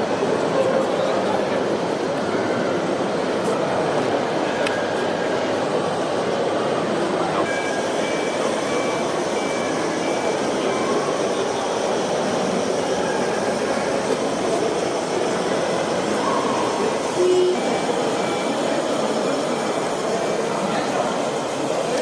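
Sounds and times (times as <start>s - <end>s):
reversing beeper: 7.4s - 12.6s.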